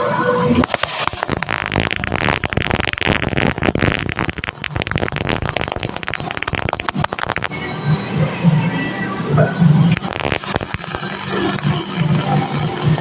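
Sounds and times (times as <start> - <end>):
electric arc welding crackling: 0.6 - 7.6, 9.9 - 13.0.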